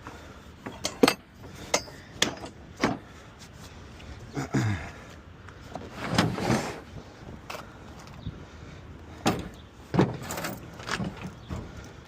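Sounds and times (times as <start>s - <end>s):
tools knocking and clanking: 0.6s - 3.0s.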